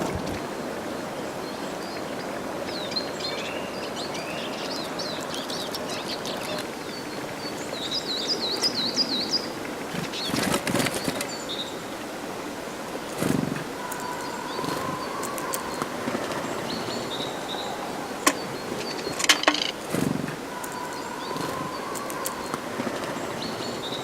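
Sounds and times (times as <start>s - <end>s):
birds chirping: 0.0s - 24.0s
wing flutters: 9.8s - 11.5s, 13.1s - 14.0s, 18.3s - 23.7s
low steady bird note: 13.3s - 24.0s.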